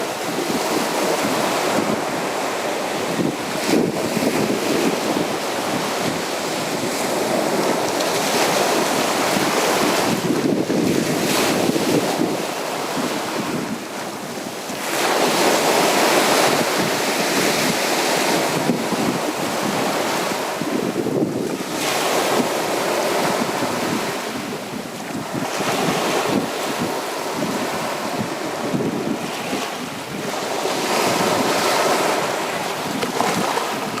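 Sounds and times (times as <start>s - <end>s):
sea waves breaking on beach: 0.0s - 34.0s.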